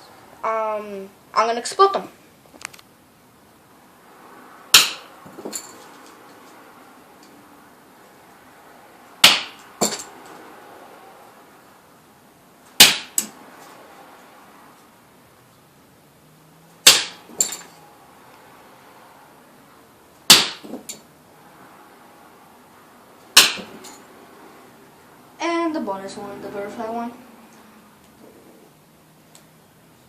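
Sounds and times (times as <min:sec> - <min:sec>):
sticks scattering: 0:04.7 - 0:06.1, 0:12.8 - 0:13.4, 0:16.8 - 0:17.8, 0:20.3 - 0:21.0, 0:23.3 - 0:24.0
stick bombs cracking apart: 0:04.8 - 0:05.1, 0:09.2 - 0:10.0, 0:12.8 - 0:13.4, 0:16.8 - 0:17.5, 0:20.3 - 0:21.0, 0:23.4 - 0:23.8.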